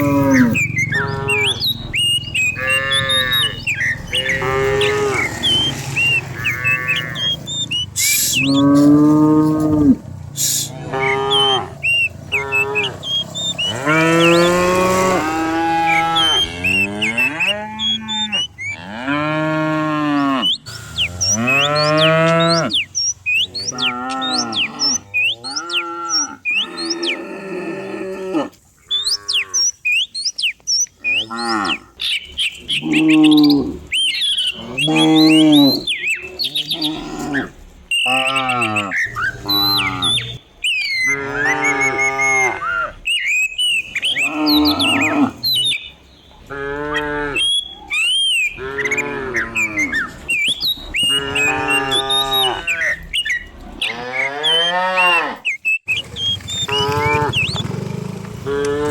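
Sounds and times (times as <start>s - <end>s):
cattle mooing: 0.0s - 29.7s, 31.0s - 32.0s, 32.6s - 40.4s, 41.0s - 43.1s, 44.0s - 45.8s, 46.4s - 55.5s, 56.4s - 58.9s.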